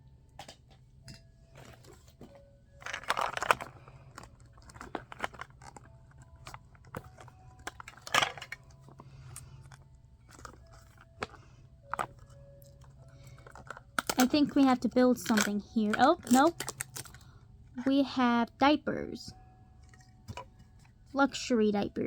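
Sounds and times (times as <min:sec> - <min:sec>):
plastic packaging crinkling: 0:01.5 - 0:17.4
small plastic pieces clicking: 0:02.8 - 0:17.3.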